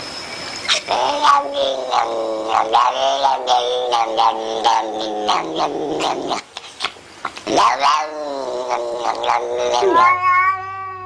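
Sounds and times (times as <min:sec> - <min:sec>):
cat yowling: 0:00.7 - 0:06.2, 0:07.6 - 0:11.0.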